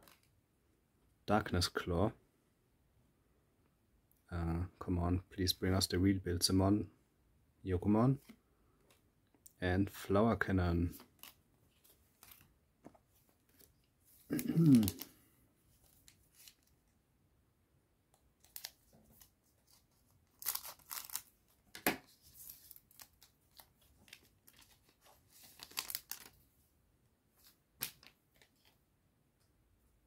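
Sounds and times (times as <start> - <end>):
foil wrapper crinkling and tearing: 14.4 - 15.2, 18.4 - 21.4, 22.4 - 26.4.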